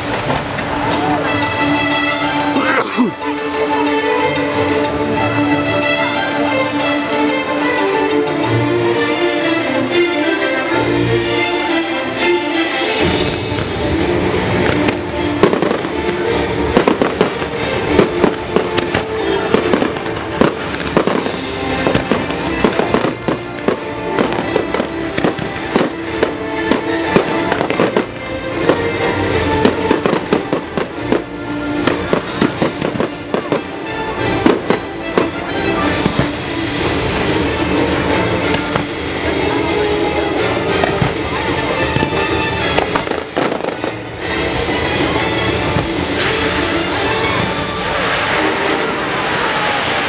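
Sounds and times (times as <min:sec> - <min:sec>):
fireworks bursting and crackling: 0:00.0 - 0:08.4, 0:12.8 - 0:50.0
orchestral music over loudspeakers: 0:00.0 - 0:50.0.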